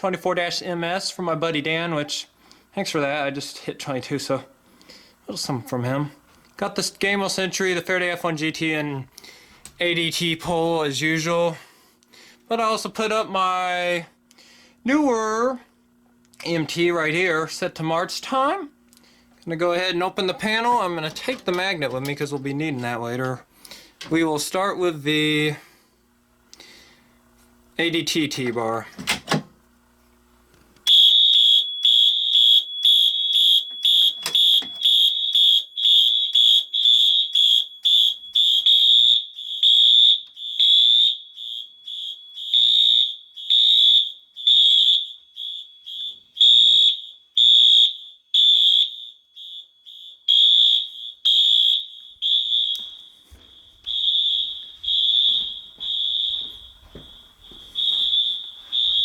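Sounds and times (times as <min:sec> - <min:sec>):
fire alarm pull station click: 0:30.8 - 0:59.0
pulsing fire alarm horns: 0:30.8 - 0:59.0.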